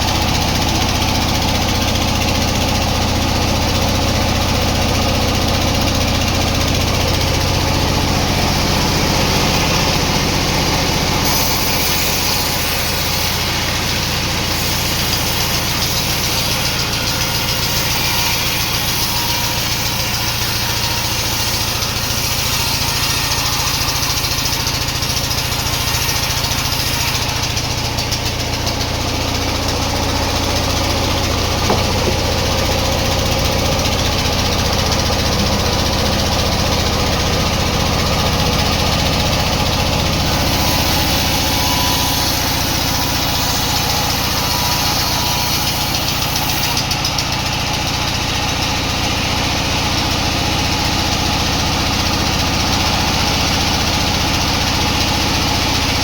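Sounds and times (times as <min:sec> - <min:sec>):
sawmill machinery humming: 0:00.0 - 0:56.0
knock: 0:31.6 - 0:32.5.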